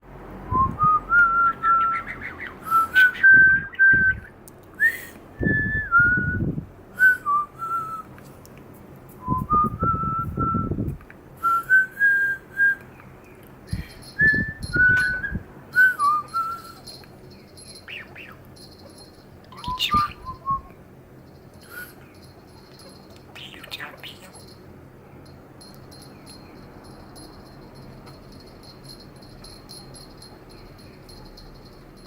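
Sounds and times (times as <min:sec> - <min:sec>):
person whistling: 0:02.7 - 0:06.4, 0:09.2 - 0:10.8, 0:14.2 - 0:16.9.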